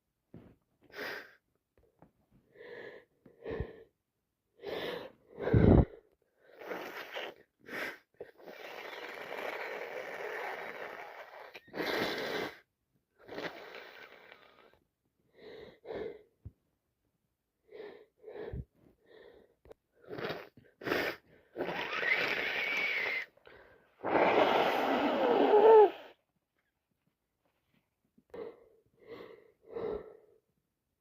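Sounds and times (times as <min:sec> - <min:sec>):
person gasping wheezy breaths: 0:04.6 - 0:06.1, 0:23.5 - 0:26.2
loud sneeze: 0:24.0 - 0:26.2.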